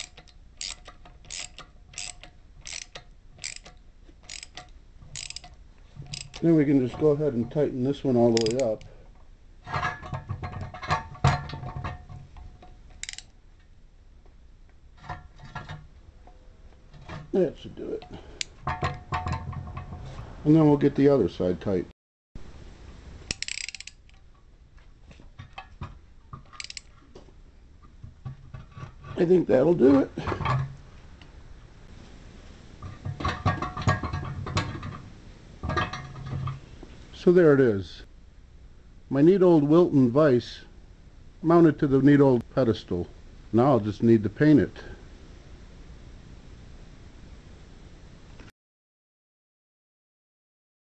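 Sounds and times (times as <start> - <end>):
ratchet clicking: 0.0 - 6.4, 8.4 - 8.9, 13.0 - 13.3, 23.3 - 24.2, 26.6 - 26.9
metal tools clinking: 0.0 - 7.2, 8.3 - 8.9, 26.5 - 26.9.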